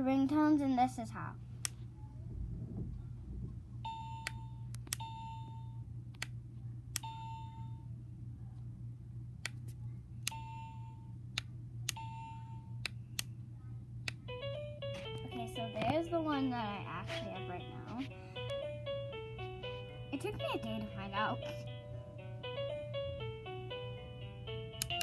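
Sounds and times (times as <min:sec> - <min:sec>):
alarm clock buttons clicking: 0:24.8 - 0:25.0.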